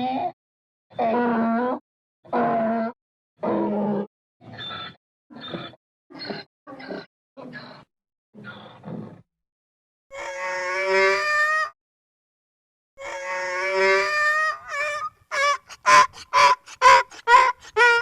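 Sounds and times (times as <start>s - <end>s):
donkey braying: 13.0s - 18.0s.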